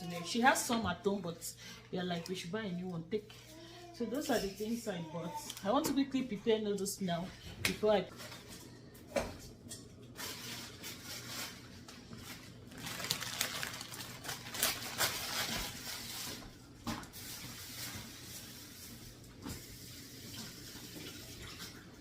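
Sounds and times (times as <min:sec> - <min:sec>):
rustling: 0:10.2 - 0:16.5.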